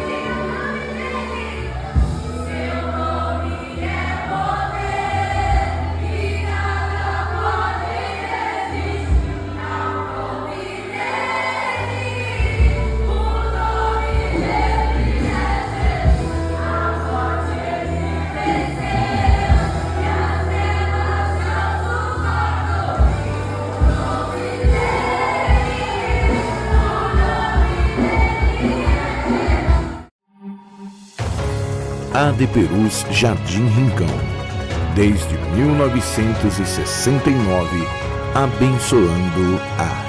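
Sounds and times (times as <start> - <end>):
choir singing gospel: 0.0 - 30.1, 32.1 - 40.0
bass line: 11.8 - 30.1, 31.8 - 40.0.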